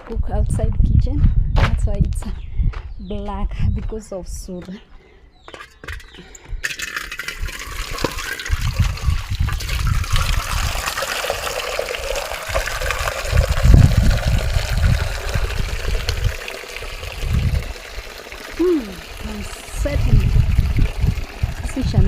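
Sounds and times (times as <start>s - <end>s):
water pouring into a pot: 6.6s - 22.0s
heavy low rumbles: 19.1s - 22.0s.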